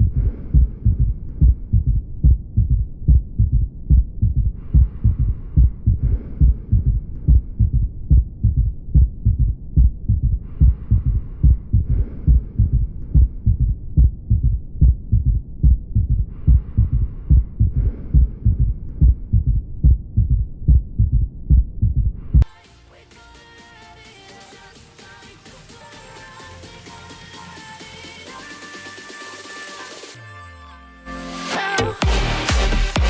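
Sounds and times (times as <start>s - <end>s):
heartbeat gallop rhythm: 0.0s - 22.5s, 31.9s - 33.0s.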